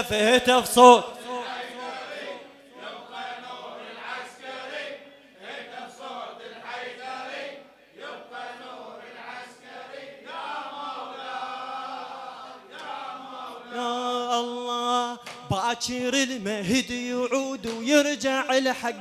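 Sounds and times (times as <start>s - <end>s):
men chanting in unison: 0.0s - 19.0s.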